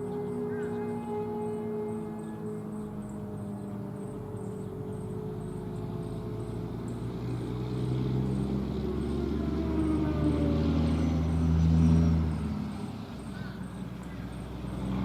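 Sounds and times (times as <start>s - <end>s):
storm siren winding down: 0.0s - 13.3s
distant sirens: 0.0s - 15.0s.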